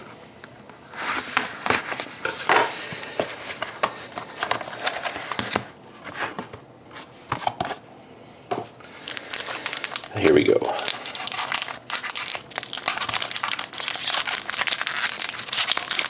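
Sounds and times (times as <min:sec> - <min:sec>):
packaging rustling and crinkling: 0:08.9 - 0:16.0.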